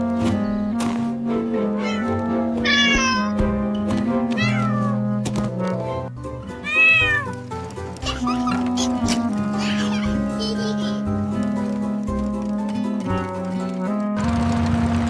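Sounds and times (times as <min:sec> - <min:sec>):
background music: 0:00.0 - 0:15.0
cat meowing: 0:01.6 - 0:03.5, 0:04.3 - 0:05.2, 0:06.5 - 0:09.0.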